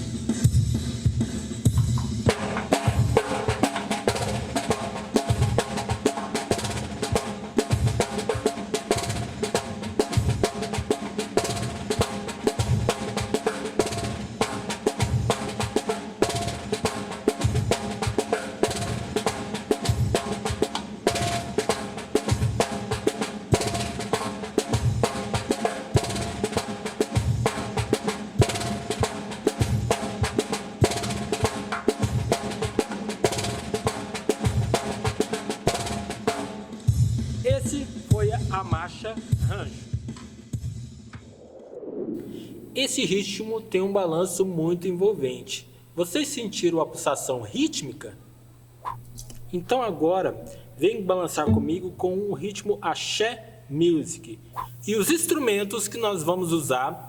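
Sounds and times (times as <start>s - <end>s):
snare drum sharp strokes: 48.8s - 49.8s, 51.3s - 52.7s, 54.5s - 57.0s
backing loop: 49.2s - 52.6s
bass drum pulse: 51.5s - 52.2s.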